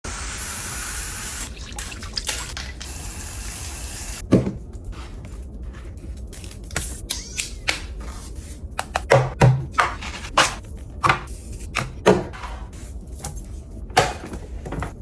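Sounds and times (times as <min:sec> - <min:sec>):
running water splashing: 0:00.1 - 0:04.2.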